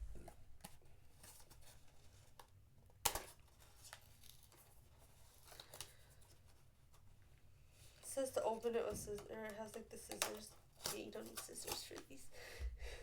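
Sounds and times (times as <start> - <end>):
handling small package: 0.0 - 8.1.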